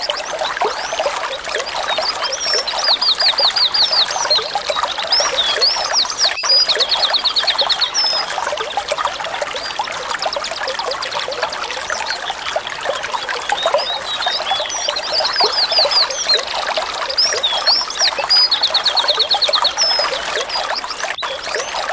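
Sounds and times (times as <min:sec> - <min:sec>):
songbird trilling and chirping: 0:00.0 - 0:08.3, 0:13.6 - 0:21.9
trickling bubbling water: 0:00.0 - 0:21.9.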